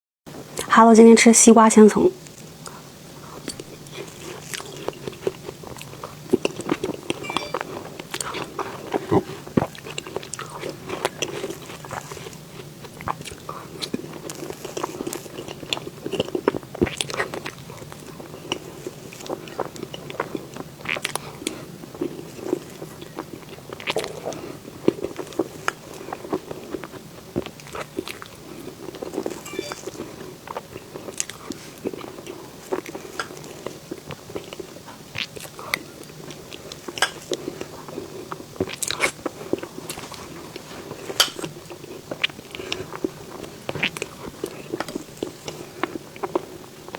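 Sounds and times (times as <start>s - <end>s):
person chewing close to microphone: 2.2s - 46.9s.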